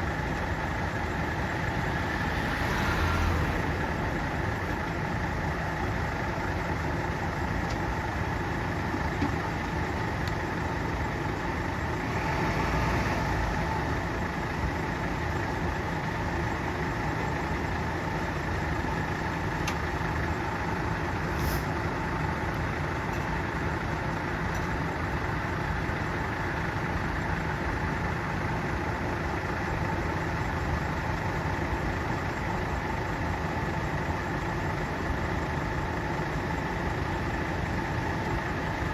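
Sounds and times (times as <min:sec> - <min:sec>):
fire engine idling: 0:00.0 - 0:12.1, 0:13.4 - 0:38.9.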